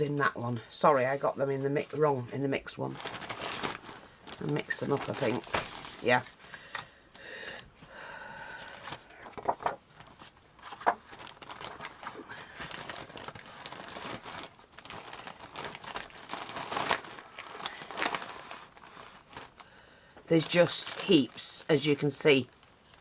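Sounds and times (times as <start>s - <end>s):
paper rustling and crinkling: 2.8s - 6.9s, 8.5s - 19.6s, 20.3s - 23.0s
sharp paper crackles: 2.8s - 6.9s, 8.7s - 19.7s, 20.3s - 23.0s.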